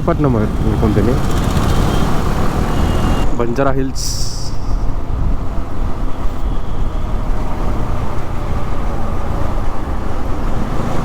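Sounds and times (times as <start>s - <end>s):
motorcycle engine: 0.0s - 3.4s
wind buffeting microphone: 0.0s - 11.0s.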